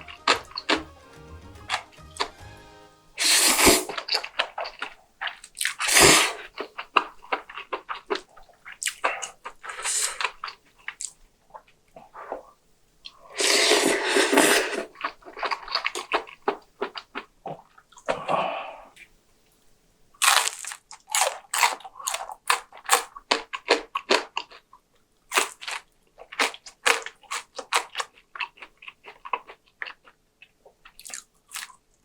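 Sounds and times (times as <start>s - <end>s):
wet chewing: 3.2s - 12.4s, 14.4s - 18.2s, 20.2s - 31.9s
loud wet slurps: 5.7s - 6.5s, 13.4s - 14.9s.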